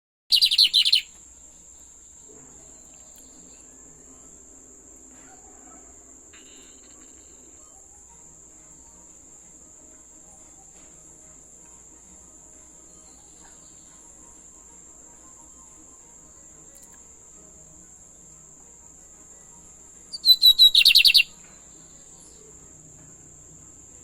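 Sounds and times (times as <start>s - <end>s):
bird song burst: 0.3s - 1.2s, 20.1s - 22.5s
high-pitched insect-like trill: 0.3s - 24.0s.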